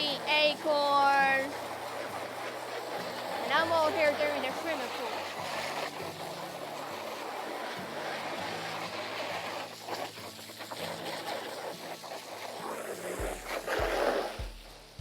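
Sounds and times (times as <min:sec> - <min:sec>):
hose water splashing into pool: 0:00.0 - 0:15.0
background music with low beat: 0:13.2 - 0:15.0.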